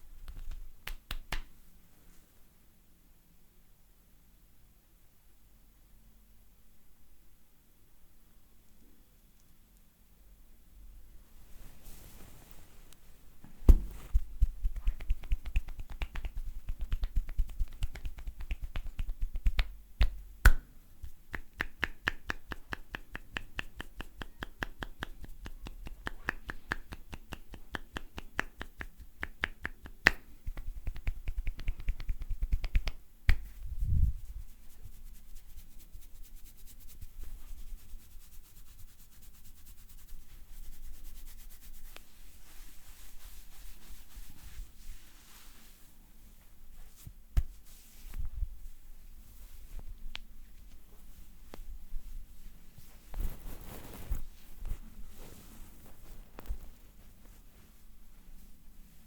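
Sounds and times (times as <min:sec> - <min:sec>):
hands clapping percussive massage: 0:00.2 - 0:01.6, 0:13.7 - 0:33.5, 0:47.4 - 0:47.6
hands rubbing skin and hair: 0:00.2 - 0:01.6, 0:11.4 - 0:59.0
dull thud: 0:13.4 - 0:14.3.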